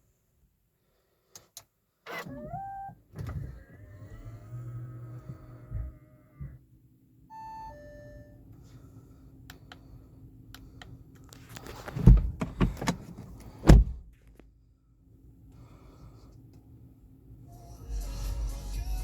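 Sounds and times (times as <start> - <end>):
heavy thumps and clunks: 11.6 - 14.2.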